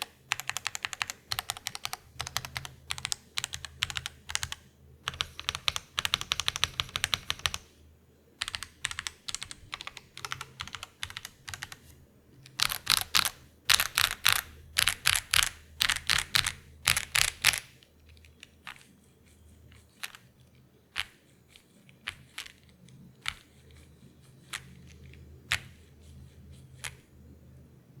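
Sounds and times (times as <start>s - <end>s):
mechanical keyboard typing: 0.0s - 7.7s, 8.4s - 11.8s, 12.5s - 19.0s, 19.7s - 25.9s.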